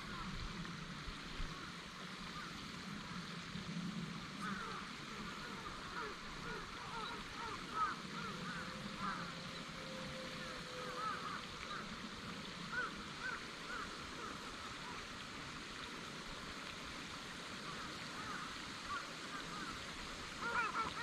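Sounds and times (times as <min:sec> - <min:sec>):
river rushing: 0:00.0 - 0:21.0
waterfowl honking: 0:04.4 - 0:09.5, 0:10.1 - 0:11.8, 0:20.4 - 0:21.0.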